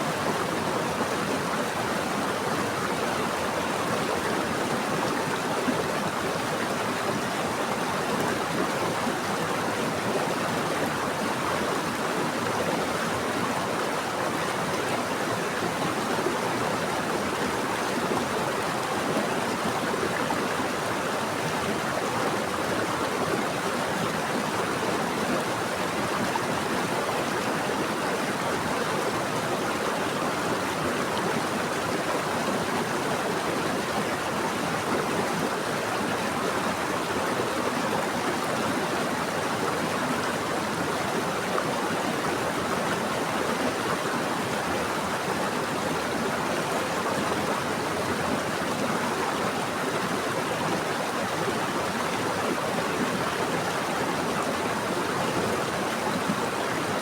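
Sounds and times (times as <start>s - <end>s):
water flowing over rocks: 0.0s - 57.0s.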